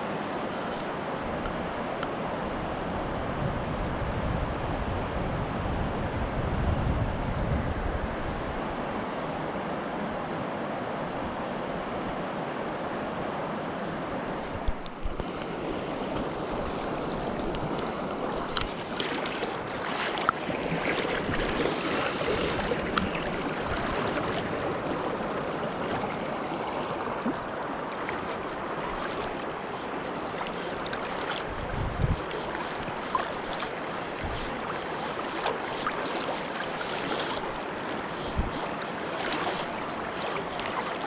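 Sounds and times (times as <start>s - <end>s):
river water rushing: 15.4s - 41.0s.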